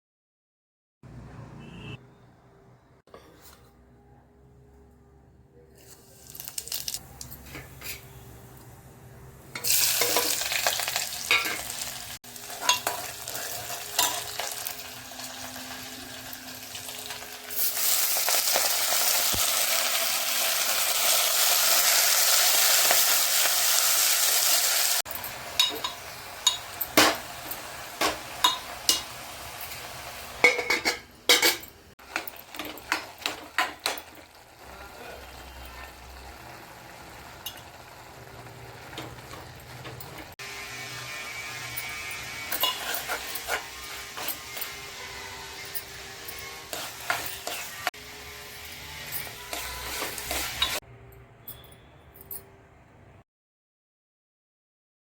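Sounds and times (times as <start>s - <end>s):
food sizzling in a pan: 5.8s - 8.2s, 9.6s - 30.5s, 32.0s - 50.8s
spoon knocking and scraping pan: 12.5s - 14.8s, 25.2s - 29.7s, 30.4s - 34.3s, 41.6s - 45.0s, 45.6s - 47.9s, 48.7s - 50.8s.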